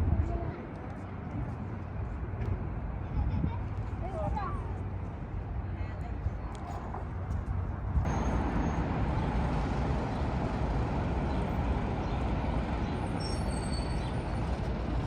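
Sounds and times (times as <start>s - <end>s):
road traffic noise: 0.0s - 15.0s.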